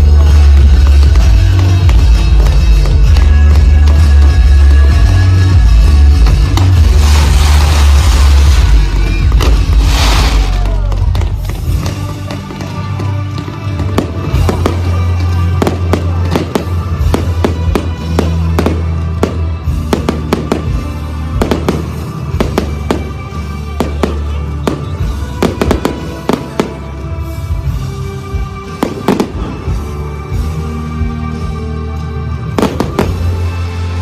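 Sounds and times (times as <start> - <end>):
loud music with heavy bass: 0.0 - 12.4
fireworks bangs and crackles: 0.0 - 34.0.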